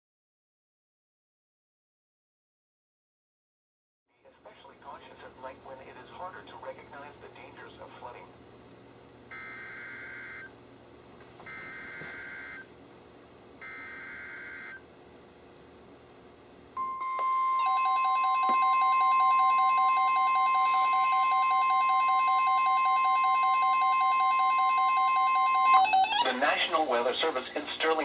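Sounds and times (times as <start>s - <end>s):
steady warning alarm tone: 9.3s - 10.6s, 11.4s - 12.7s, 13.6s - 14.8s, 16.8s - 26.4s
receiver alert beeps: 11.5s - 12.6s, 16.8s - 26.3s.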